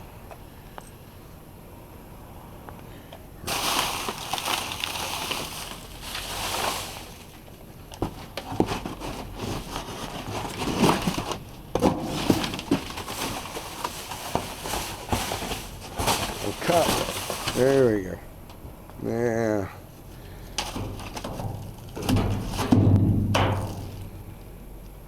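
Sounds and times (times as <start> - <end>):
trash rustling and crinkling: 3.4 - 18.8, 19.8 - 24.8
knocks and scrapes: 8.0 - 17.7, 20.6 - 24.2.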